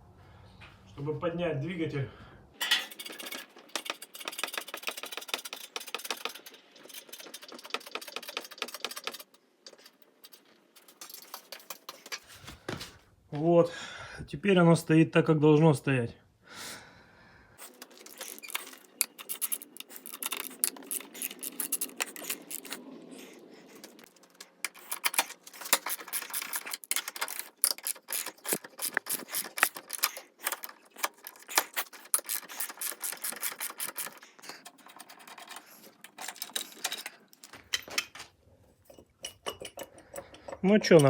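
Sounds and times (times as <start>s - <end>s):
ratchet clicking: 24.0s - 34.2s
metal clinks: 38.8s - 41.0s.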